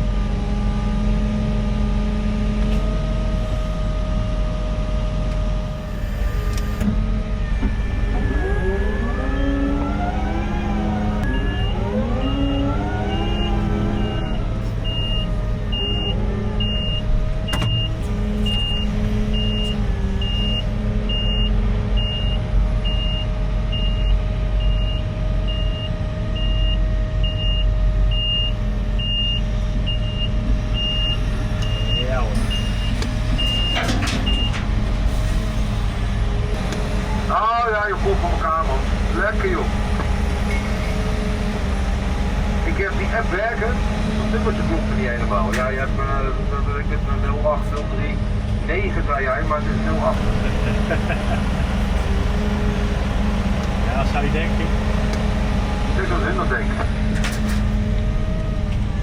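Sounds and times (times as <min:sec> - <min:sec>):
heavy construction machinery running: 0:00.0 - 0:59.0
machinery whines: 0:00.0 - 0:59.0
reversing alarm beeps: 0:11.2 - 0:34.6.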